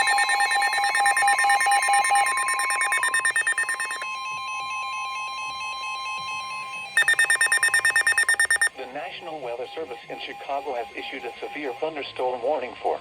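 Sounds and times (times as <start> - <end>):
rapid pulsing alert beeps: 0.0 - 4.0, 7.0 - 8.7
steady warning alarm tone: 0.0 - 8.7.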